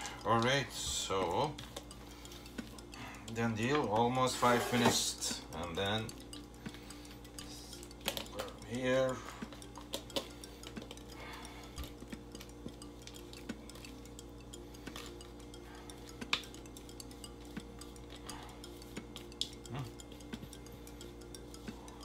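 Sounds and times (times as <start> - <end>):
utensil scraping a bowl: 4.2 - 5.4.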